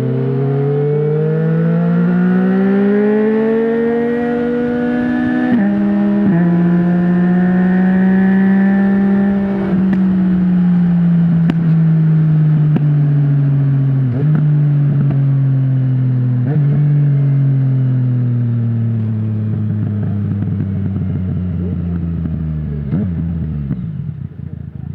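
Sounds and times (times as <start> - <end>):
motorcycle engine revving down: 0.0 - 24.9.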